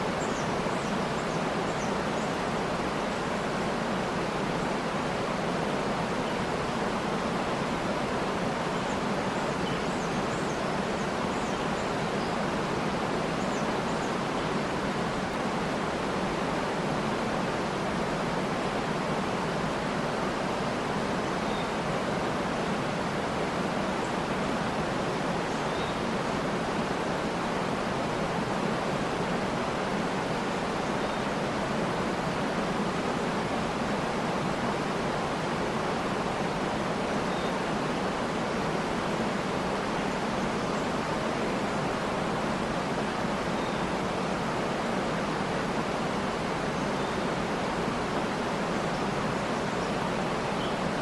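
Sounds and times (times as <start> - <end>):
waterfall rushing water: 0.0 - 51.0
faint bird chirps: 0.2 - 2.4, 21.2 - 21.8, 25.4 - 26.2, 37.2 - 37.7, 48.4 - 51.0.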